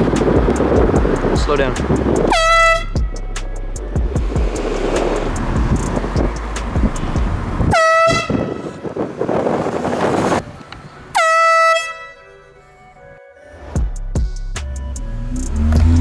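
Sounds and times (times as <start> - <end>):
rushing noise with low rumble: 0.0 - 11.0
air horn blasting: 2.3 - 3.2, 7.0 - 8.8, 11.1 - 12.3.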